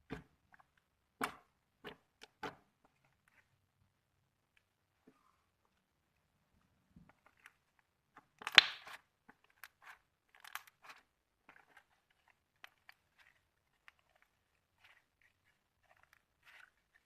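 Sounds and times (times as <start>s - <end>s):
slime popping: 8.4s - 9.0s
slime clicks and crackles: 8.4s - 16.6s.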